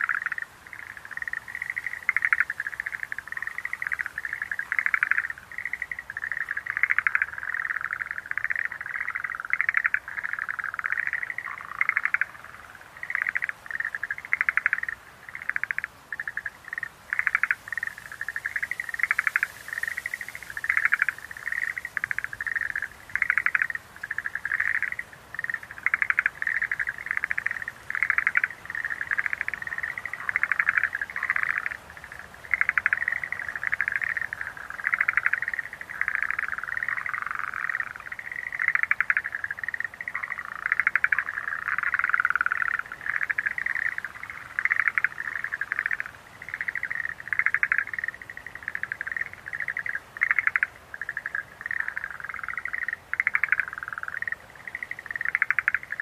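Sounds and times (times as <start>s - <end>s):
tree frogs calling: 0.0s - 56.0s.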